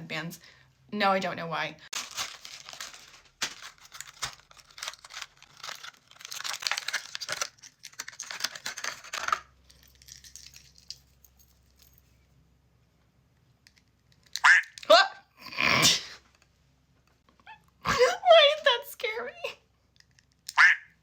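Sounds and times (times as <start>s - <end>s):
packaging crinkling and tearing: 1.9s - 10.9s.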